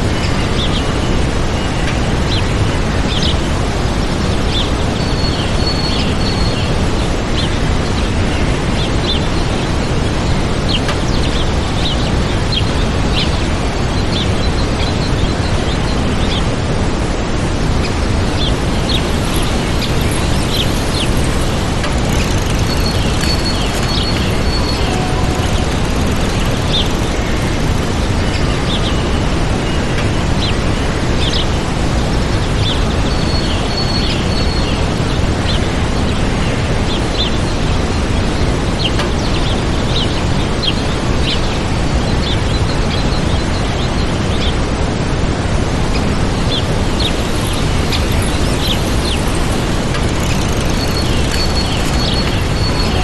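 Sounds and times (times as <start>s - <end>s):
waterfall rushing: 6.8s - 33.0s, 43.8s - 53.0s
small birds chirping: 17.7s - 44.8s, 45.9s - 53.0s.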